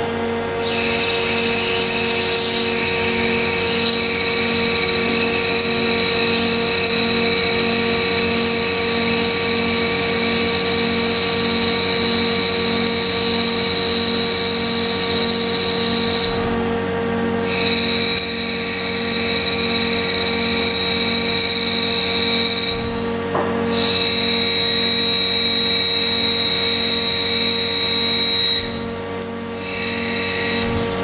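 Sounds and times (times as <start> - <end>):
high machine whine: 0.0 - 31.0
lathe machine hum: 0.0 - 31.0.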